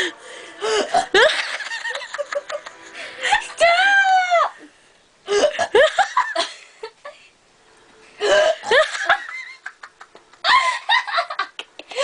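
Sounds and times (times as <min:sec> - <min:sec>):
person giggling: 0:08.4 - 0:12.0.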